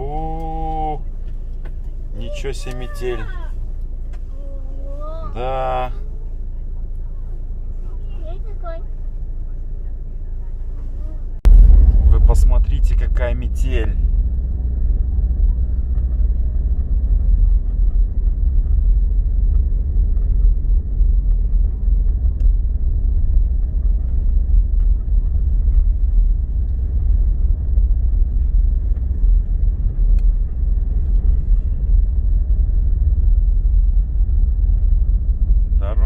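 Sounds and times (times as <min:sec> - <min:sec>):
wind buffeting microphone: 0:11.4 - 0:36.0.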